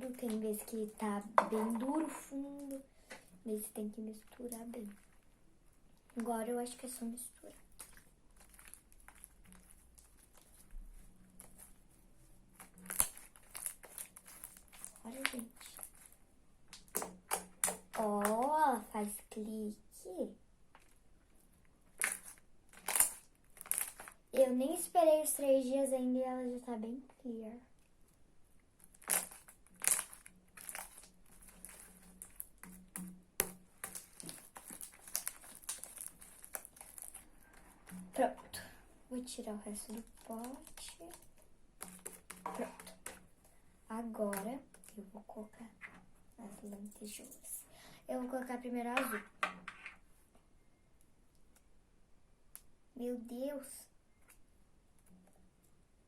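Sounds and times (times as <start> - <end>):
sticky slime squishing: 0.0 - 19.2, 20.7 - 24.6, 28.6 - 46.9.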